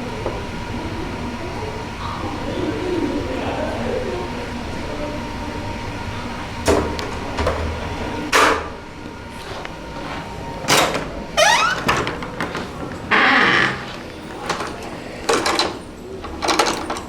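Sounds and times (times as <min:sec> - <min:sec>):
door creak rising in pitch: 0:11.4 - 0:12.2, 0:13.1 - 0:14.1.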